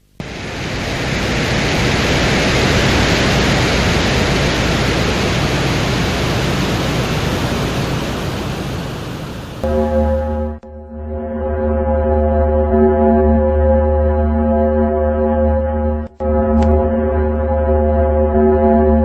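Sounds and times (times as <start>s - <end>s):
steady rushing hiss: 0.0s - 9.6s.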